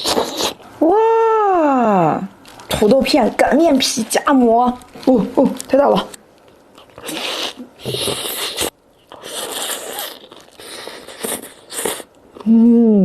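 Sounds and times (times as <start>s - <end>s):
crunchy chewing: 6.4s - 12.4s.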